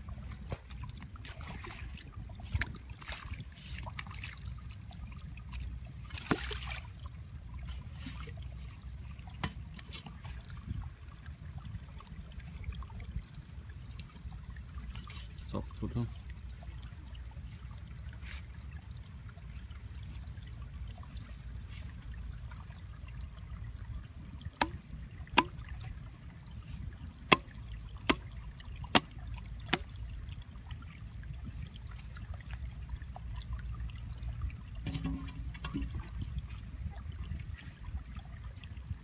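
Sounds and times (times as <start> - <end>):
water trickling and sloshing: 0.0 - 39.0.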